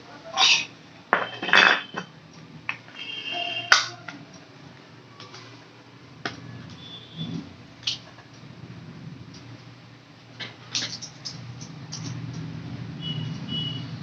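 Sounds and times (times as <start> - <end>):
small hard objects clicking: 10.7 - 12.5.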